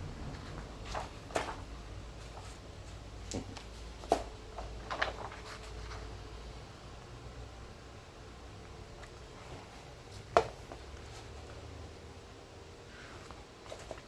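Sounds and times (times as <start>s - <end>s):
cardboard and paper knocks: 10.3s - 10.8s.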